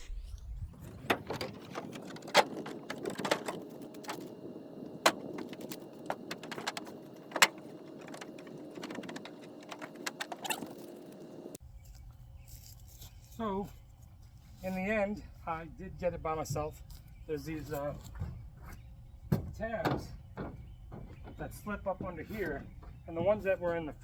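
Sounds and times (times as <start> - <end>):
plastic scraping and rubbing: 0.7 - 11.6
sharp knocks and clicks: 0.8 - 4.4, 5.0 - 11.6, 19.3 - 23.6.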